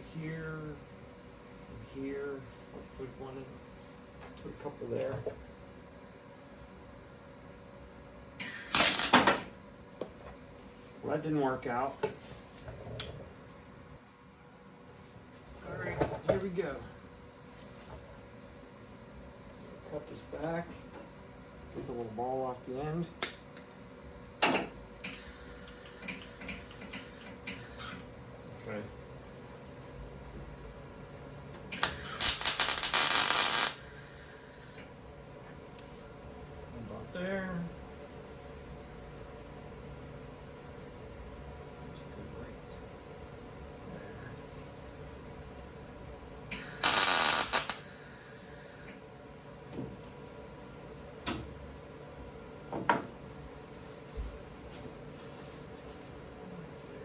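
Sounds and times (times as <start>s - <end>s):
welder arc crackling: 8.4s - 9.4s, 31.7s - 34.8s, 46.5s - 48.9s.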